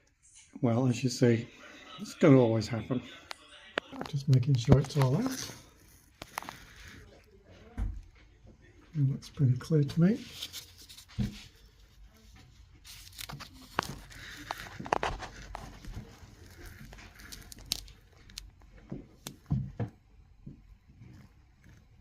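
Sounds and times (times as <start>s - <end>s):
packaging rustling: 4.0s - 7.2s, 12.8s - 19.4s.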